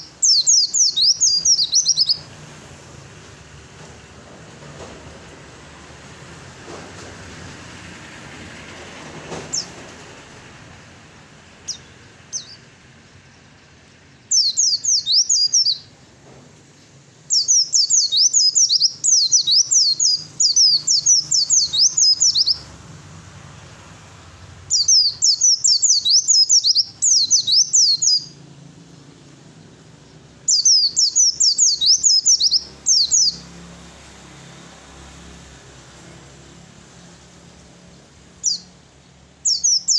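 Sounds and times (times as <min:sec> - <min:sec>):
bird singing rapid high notes: 0:00.0 - 0:02.6, 0:11.6 - 0:12.7, 0:14.2 - 0:15.9, 0:17.3 - 0:22.9, 0:24.4 - 0:28.5, 0:30.0 - 0:34.1, 0:37.0 - 0:39.9.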